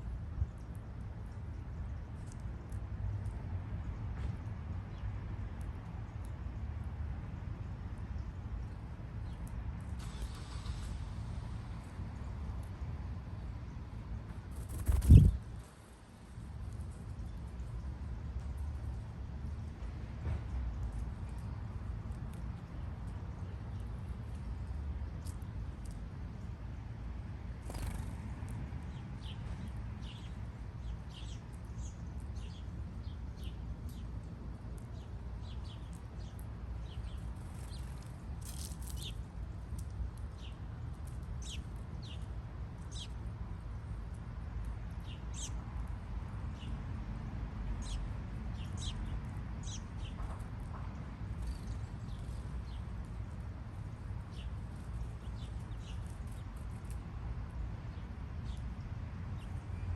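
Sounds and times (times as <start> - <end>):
small birds chirping: 14.2 - 18.2, 27.6 - 46.8, 47.6 - 57.1, 57.9 - 59.9.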